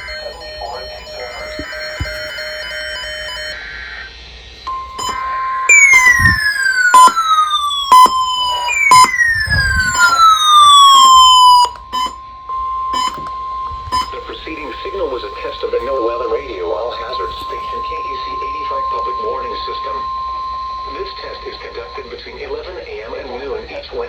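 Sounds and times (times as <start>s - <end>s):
falling siren-like sweeps: 0.0s - 3.6s, 4.7s - 12.2s
short beeps: 0.0s - 3.6s, 4.7s - 15.2s
data burst: 0.0s - 12.2s, 12.9s - 15.6s
steady warning alarm tone: 0.0s - 24.0s.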